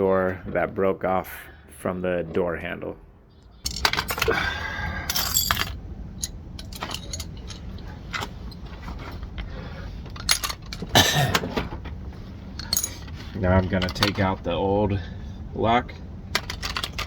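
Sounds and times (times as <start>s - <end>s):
metal clicking and rattling: 3.7s - 4.4s, 5.1s - 9.5s, 10.1s - 11.8s, 12.6s - 14.4s, 16.3s - 17.0s.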